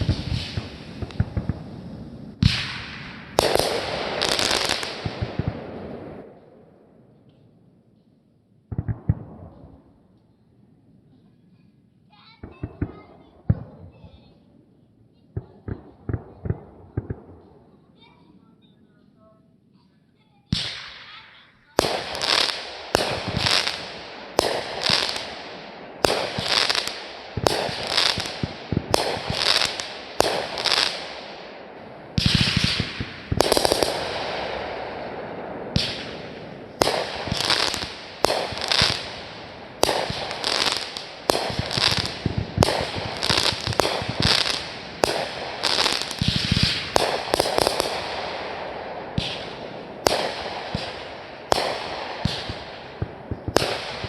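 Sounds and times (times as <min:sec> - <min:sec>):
fireworks bangs: 0:00.0 - 0:08.1, 0:08.7 - 0:10.4, 0:11.0 - 0:54.0
fireworks crackling: 0:00.0 - 0:54.0.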